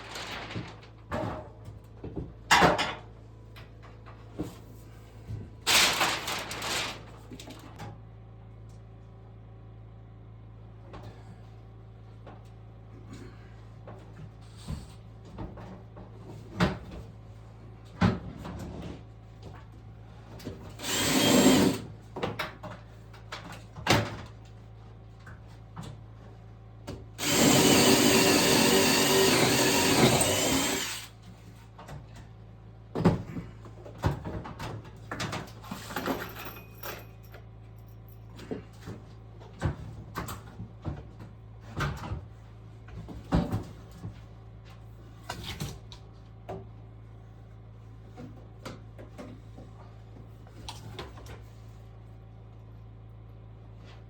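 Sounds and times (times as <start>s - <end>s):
power drill running: 20.8s - 21.8s, 27.2s - 31.2s.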